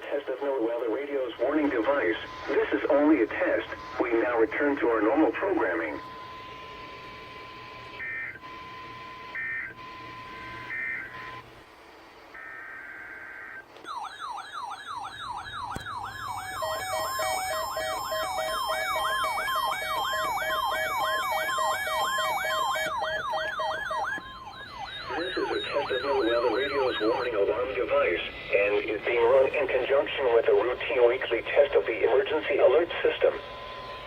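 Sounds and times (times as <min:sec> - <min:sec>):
faint steady tone: 0:00.0 - 0:34.0
alternating alarm beeps: 0:00.9 - 0:11.5, 0:12.3 - 0:34.0
digital data tone bursts: 0:01.4 - 0:06.5, 0:12.4 - 0:34.0
siren sweeping up and down: 0:01.4 - 0:11.4, 0:12.3 - 0:34.0.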